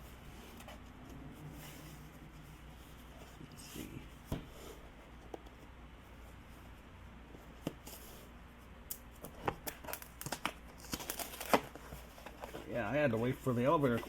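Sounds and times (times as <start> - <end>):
packaging being opened by hand: 9.5 - 12.7
packaging crinkling: 9.6 - 12.6.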